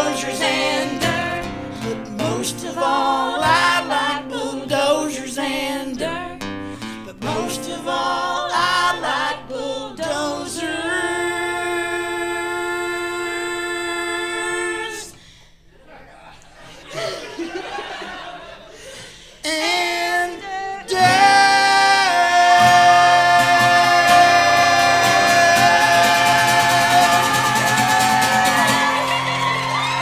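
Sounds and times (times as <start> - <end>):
people singing together: 0.0 - 6.4, 7.2 - 15.2, 19.4 - 29.2
guitar: 0.0 - 13.3, 20.8 - 30.0.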